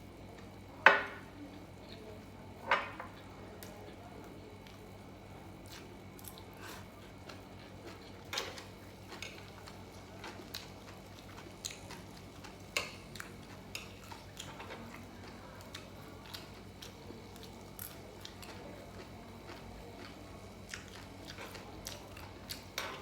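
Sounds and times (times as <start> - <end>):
faint steady hum: 0.0 - 23.0
chewing and crunching: 5.6 - 23.0.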